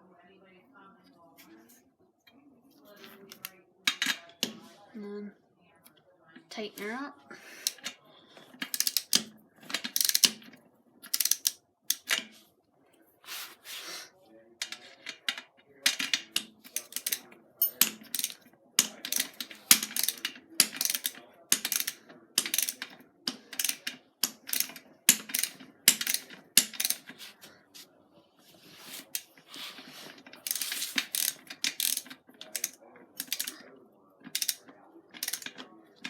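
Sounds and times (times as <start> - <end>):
ratchet wrench clicking: 8.7 - 9.2, 10.0 - 10.3, 11.1 - 12.0, 19.1 - 22.8, 23.6 - 27.0, 30.4 - 33.5, 34.4 - 34.6, 35.2 - 35.5.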